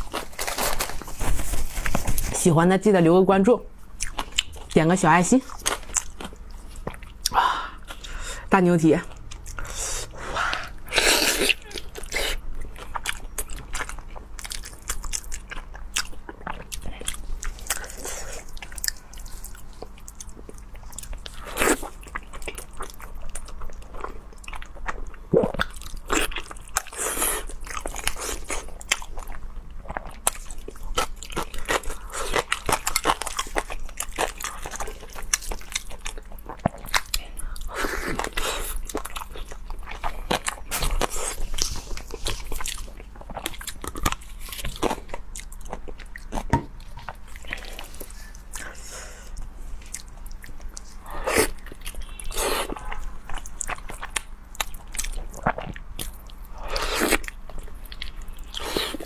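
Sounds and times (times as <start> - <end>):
person biting and chewing: 49.4 - 59.0.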